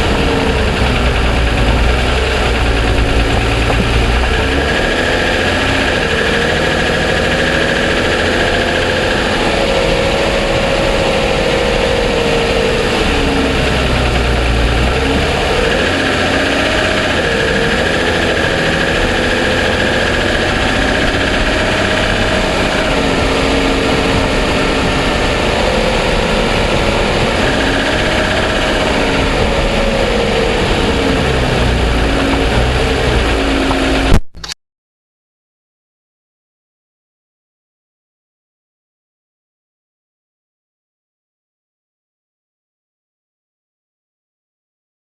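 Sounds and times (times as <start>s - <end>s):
car engine idling with ticking: 0.0s - 34.2s.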